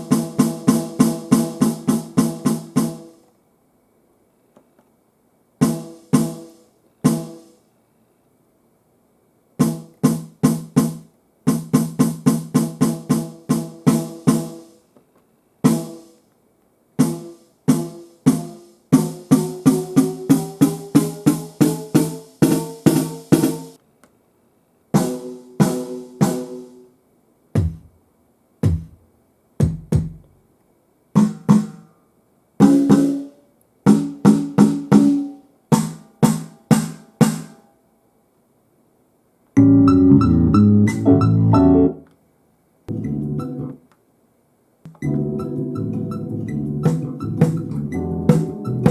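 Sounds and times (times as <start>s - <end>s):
pitched electronic drum strikes: 0.0s - 3.1s, 5.6s - 7.6s, 9.6s - 14.6s, 17.0s - 23.7s, 27.6s - 28.0s, 28.6s - 29.0s, 29.6s - 30.2s, 46.8s - 48.9s.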